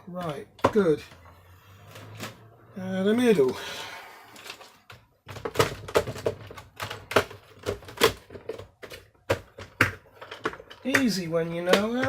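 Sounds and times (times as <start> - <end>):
plastic parts clicking and knocking: 0.0 - 1.3, 4.3 - 12.0.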